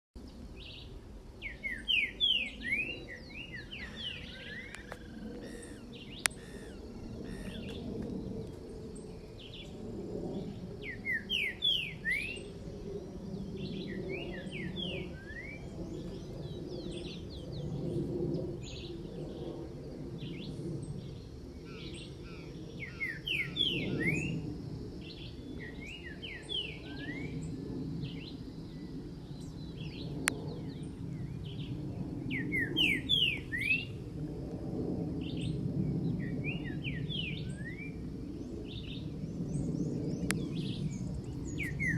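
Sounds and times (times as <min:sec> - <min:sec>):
bird singing whistled phrases: 0:01.5 - 0:07.7, 0:10.8 - 0:12.5, 0:22.8 - 0:24.4, 0:32.3 - 0:33.9, 0:41.5 - 0:41.9.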